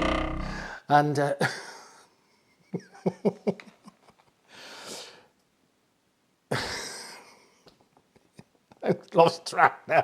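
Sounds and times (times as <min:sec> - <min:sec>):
mouth clicks and throaty sounds: 0:00.0 - 0:00.7
person breathing out: 0:00.0 - 0:00.8.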